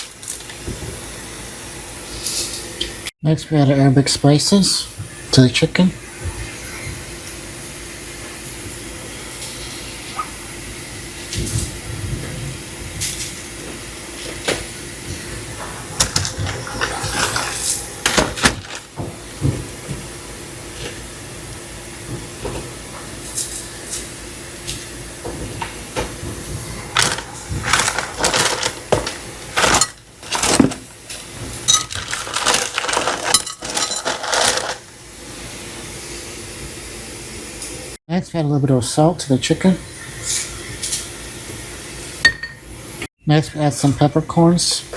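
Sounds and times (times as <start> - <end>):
spice containers clicking and rustling: 27.0 - 30.9, 31.7 - 34.8.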